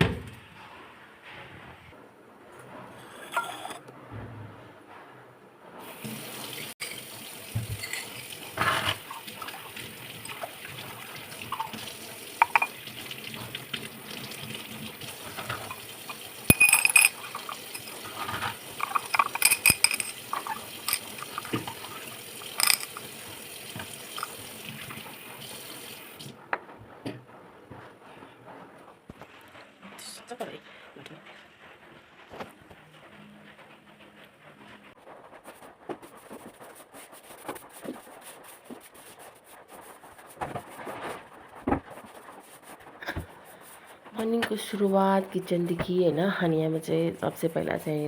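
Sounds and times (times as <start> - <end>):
containers clinking: 3.0 - 3.8, 6.8 - 13.7, 14.3 - 25.0
tap water running into sink: 5.8 - 26.3.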